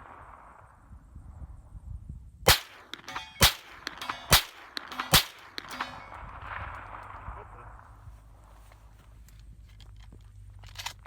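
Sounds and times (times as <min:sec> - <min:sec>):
rounds clanging on steel targets: 0:02.5 - 0:07.2
carbine gunshots: 0:02.5 - 0:08.0.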